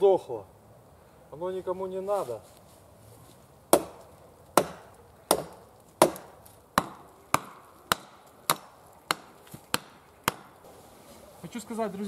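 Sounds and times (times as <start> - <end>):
hatchet chopping wood: 3.7 - 10.6.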